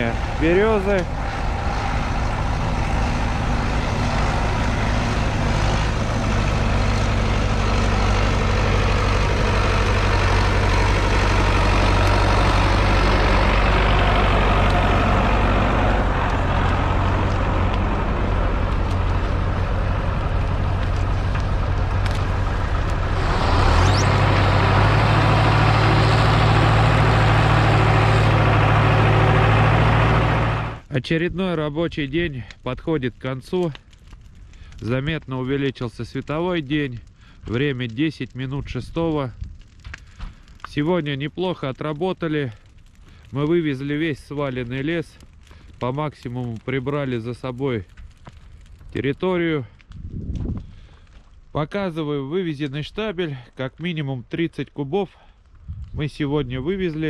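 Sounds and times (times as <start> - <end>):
tractor diesel engine running: 0.0 - 30.9.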